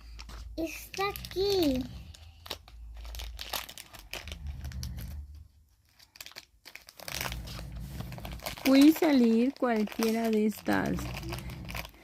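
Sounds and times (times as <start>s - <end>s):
plastic wrapping crinkling: 0.0s - 12.0s.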